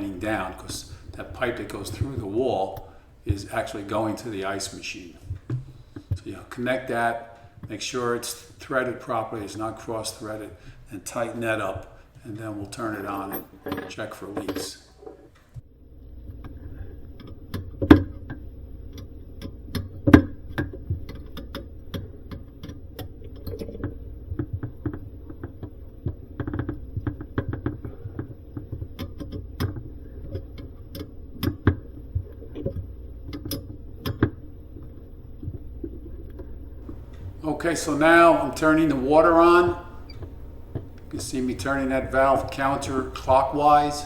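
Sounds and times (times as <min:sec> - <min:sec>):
low hum: 0:36.8 - 0:44.0.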